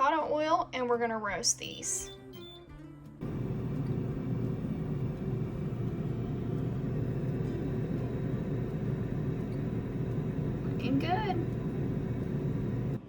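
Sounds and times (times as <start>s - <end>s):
air fryer fan whirring: 3.2s - 13.0s.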